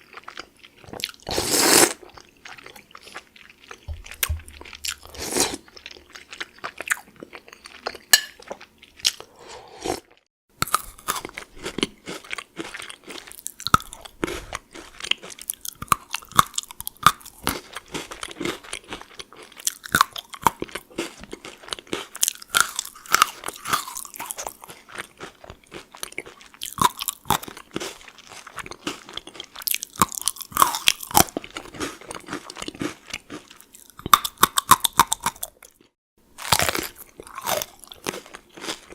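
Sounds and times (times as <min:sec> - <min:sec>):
soft chewing of soup noodles: 0:00.0 - 0:16.4
crunching of biscuit sticks: 0:10.6 - 0:38.9.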